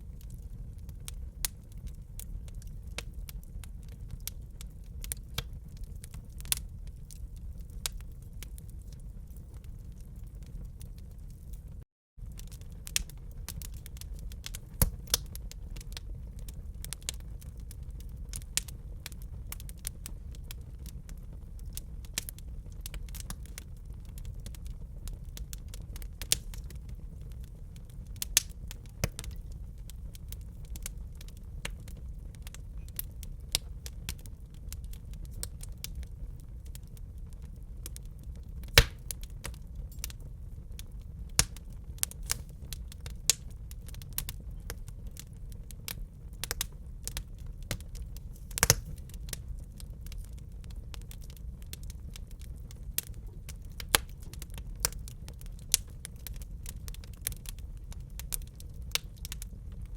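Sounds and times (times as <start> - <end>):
fire popping and snapping: 0.0 - 59.9
low rumble of flames: 0.0 - 59.9
wood fire crackling: 0.0 - 59.9.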